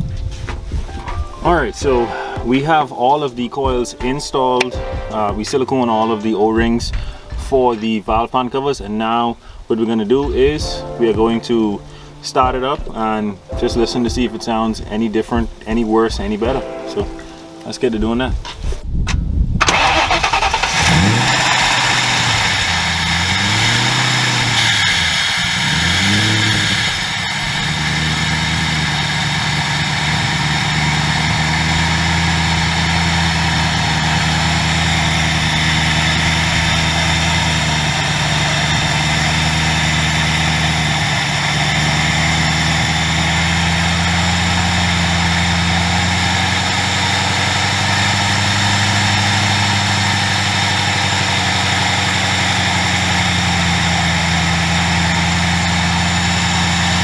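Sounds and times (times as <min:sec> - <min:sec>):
car engine idling: 0:19.6 - 0:57.0.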